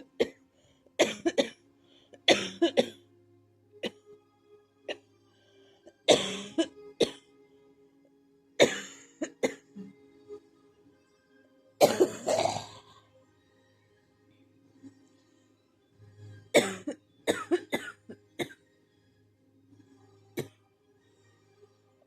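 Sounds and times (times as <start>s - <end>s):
person coughing hard: 1.0s - 1.6s, 2.3s - 3.0s, 6.1s - 7.2s, 8.6s - 9.6s, 11.8s - 12.8s, 16.6s - 18.6s.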